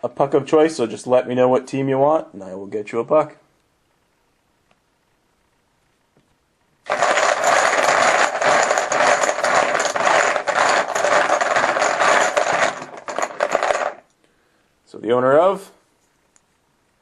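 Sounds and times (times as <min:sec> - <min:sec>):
poker chips rattling in bucket: 0:06.9 - 0:14.1.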